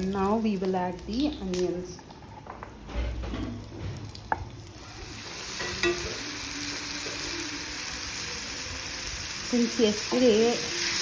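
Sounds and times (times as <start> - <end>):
onions sizzling in hot fat: 3.9 - 11.0
spoon clinking against pan: 5.6 - 6.2.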